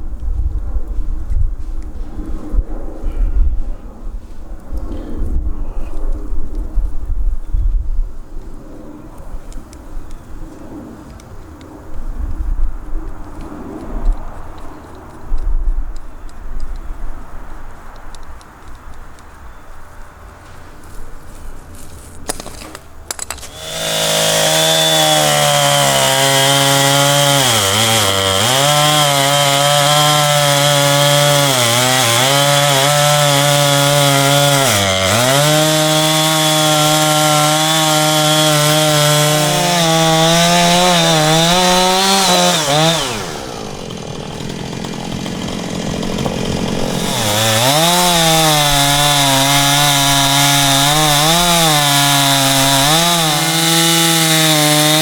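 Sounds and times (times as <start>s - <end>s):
chainsaw cutting log: 22.3s - 55.0s.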